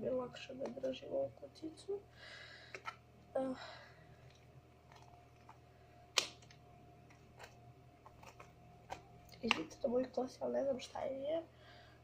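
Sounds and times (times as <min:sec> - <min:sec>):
person sighing: 0:03.4 - 0:04.0.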